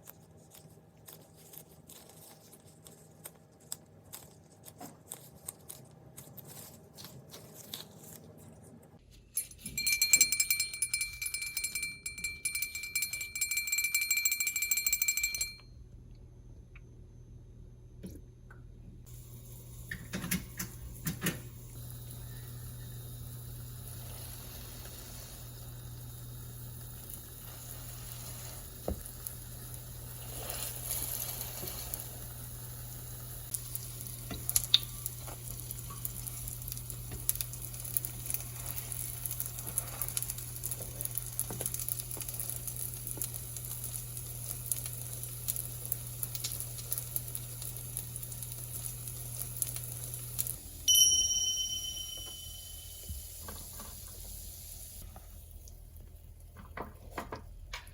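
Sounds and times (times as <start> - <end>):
pancakes sizzling in oil: 19.1 - 50.9
short bright ringing tone: 50.9 - 53.1.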